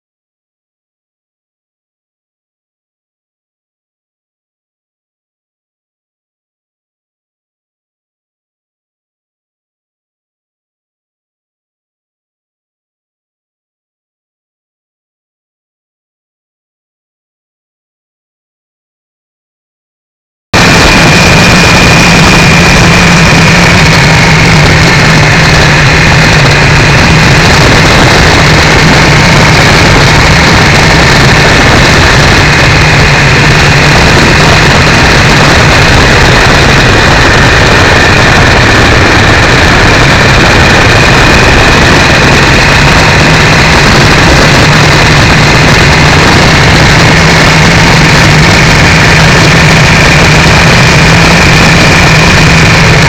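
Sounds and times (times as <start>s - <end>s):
loud wind rush: 20.6s - 53.0s
motorcycle engine running: 20.6s - 53.0s.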